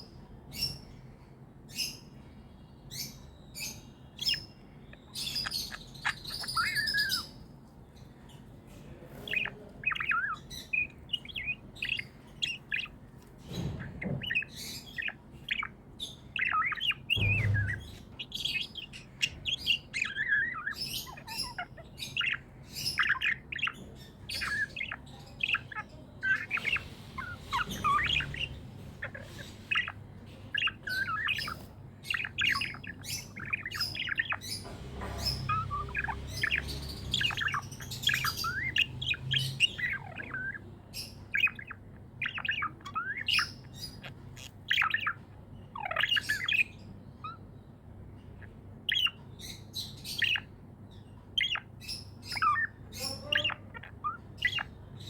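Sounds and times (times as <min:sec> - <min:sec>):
budgerigars chirping and warbling: 0:00.0 - 0:55.0.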